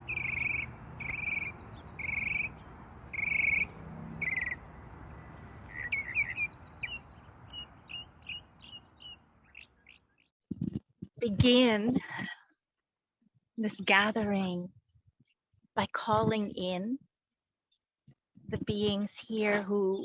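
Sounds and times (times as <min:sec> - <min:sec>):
birds calling: 0:00.0 - 0:10.3.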